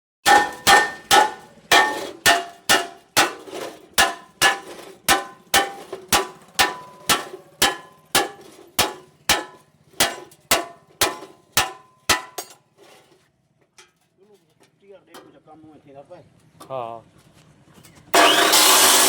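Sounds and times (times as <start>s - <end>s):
hammer striking metal: 0.2s - 12.6s, 18.2s - 19.0s.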